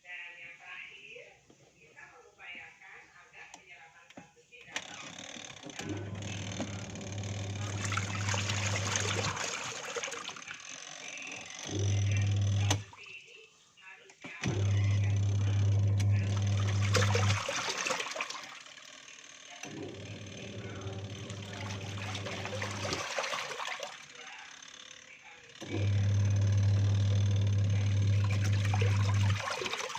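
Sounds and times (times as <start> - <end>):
electric hum: 11.6 - 13.0, 14.4 - 17.5, 19.6 - 23.0, 25.6 - 29.4.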